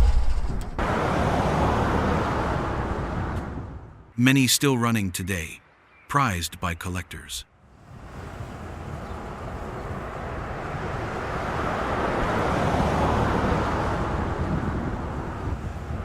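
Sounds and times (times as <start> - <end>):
vehicle passing by: 0.8 - 4.0, 7.9 - 16.0.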